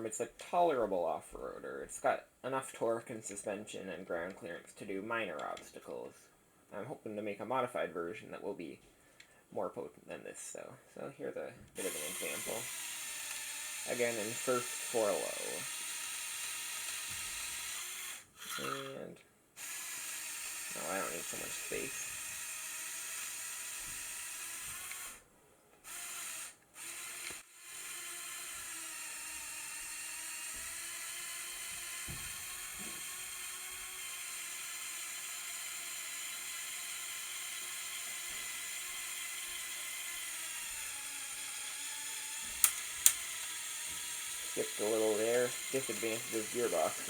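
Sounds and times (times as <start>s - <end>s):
toy electric motor whining: 11.8s - 19.0s, 19.6s - 25.2s, 25.8s - 47.0s
plastic gears skipping clicks: 41.6s - 47.0s
plastic gear noise: 41.7s - 47.0s.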